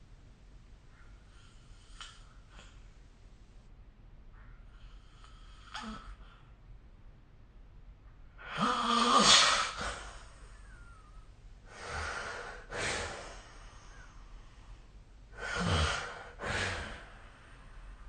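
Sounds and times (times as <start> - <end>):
heavy breathing: 9.7 - 18.0
person snoring: 15.4 - 17.2.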